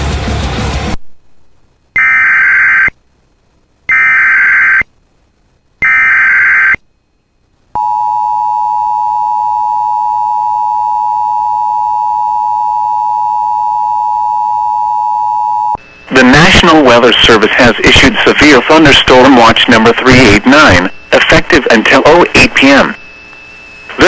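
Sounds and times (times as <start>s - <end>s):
buzzing digital data tones: 2.0s - 3.0s, 3.9s - 4.9s, 5.8s - 6.8s
loud steady attention tone: 2.0s - 3.0s, 3.9s - 4.9s, 5.8s - 24.0s.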